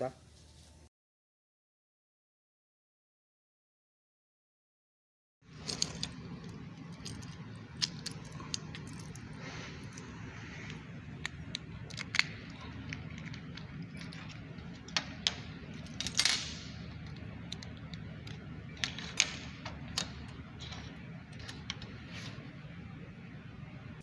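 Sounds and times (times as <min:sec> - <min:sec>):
steady low hum: 0:05.4 - 0:24.0.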